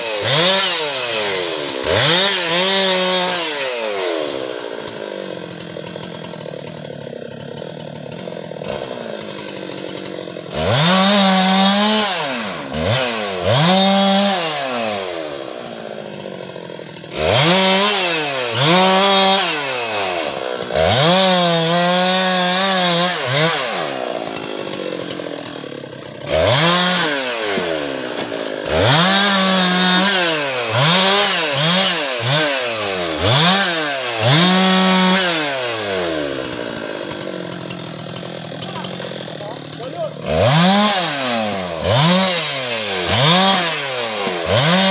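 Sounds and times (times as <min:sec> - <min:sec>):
chainsaw revving: 0:00.0 - 0:44.9.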